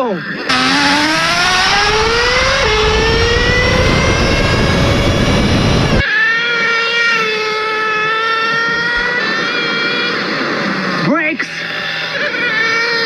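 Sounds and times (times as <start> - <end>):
high-pitched engine note: 0.5 - 6.0
rc car engine whining: 0.5 - 10.2, 11.5 - 13.0.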